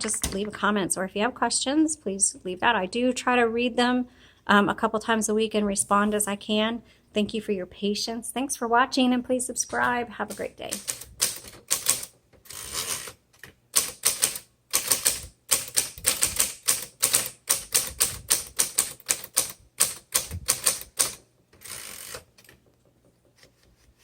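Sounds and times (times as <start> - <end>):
typewriter rasp: 10.3 - 13.2, 13.8 - 22.3
manual typewriter typing: 10.3 - 22.6.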